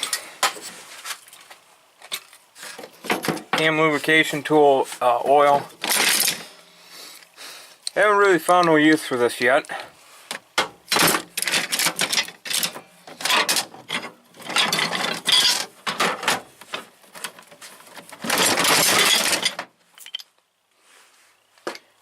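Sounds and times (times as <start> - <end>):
metal hand tools clinking: 13.3 - 15.7, 18.4 - 20.3.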